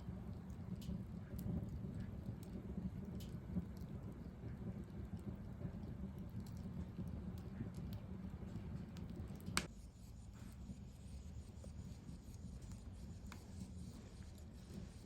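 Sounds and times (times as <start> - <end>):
sharp crack of fire: 0.0 - 9.8
wood fire crackling: 0.0 - 15.0.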